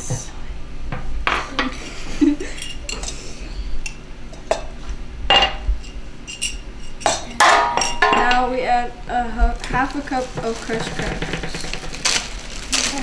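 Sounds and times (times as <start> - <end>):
utensils clinking against bowl: 1.0 - 8.8, 9.6 - 13.0.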